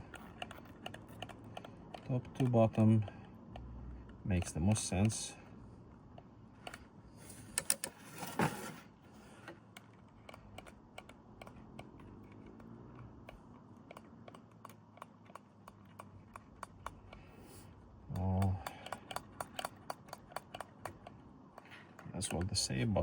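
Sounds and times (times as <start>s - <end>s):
oil pump clicking: 18.1s - 22.8s.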